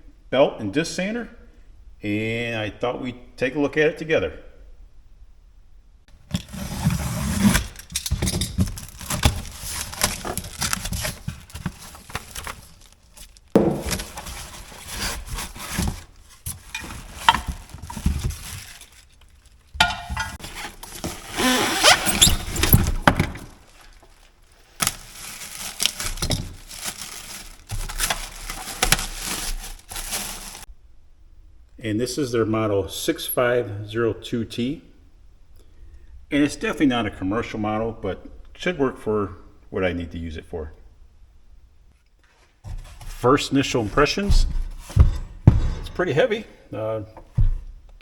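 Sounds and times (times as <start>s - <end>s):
cardboard packaging rustling: 6.1s - 30.7s
sharp knocks: 13.6s - 14.2s.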